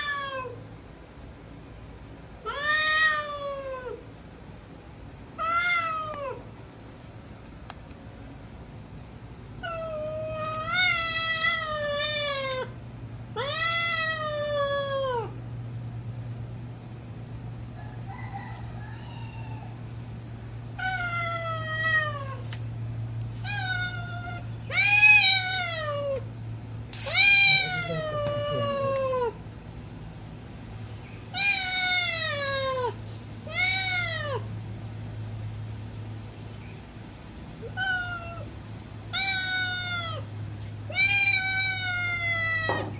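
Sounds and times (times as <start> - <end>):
cat meowing: 2.4 - 4.0, 5.4 - 6.4, 9.6 - 12.7, 13.4 - 15.3, 20.8 - 22.4, 23.4 - 26.2, 27.0 - 29.4, 31.3 - 34.5, 37.6 - 38.5, 39.1 - 40.3, 40.9 - 42.9
steady low hum: 6.0 - 33.6.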